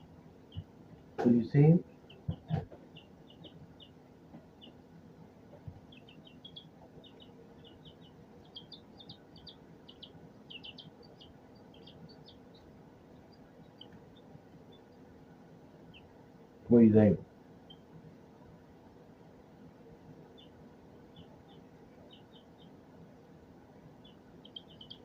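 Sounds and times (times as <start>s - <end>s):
chicks peeping: 0.0s - 16.9s, 17.5s - 25.0s.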